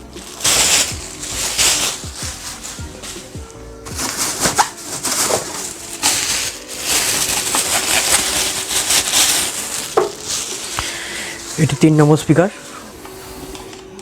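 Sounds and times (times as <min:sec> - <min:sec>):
packaging rustling and crinkling: 0:00.0 - 0:14.0.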